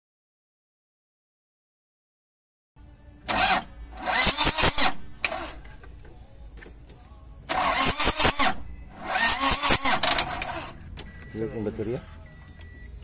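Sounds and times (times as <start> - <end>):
diesel engine cranking: 3.2 - 11.7.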